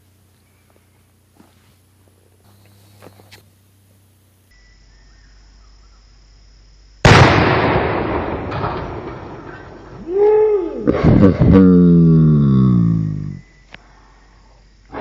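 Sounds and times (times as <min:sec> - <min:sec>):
rifle shot: 0:07.0 - 0:09.9
loud explosion with echo: 0:07.0 - 0:10.0.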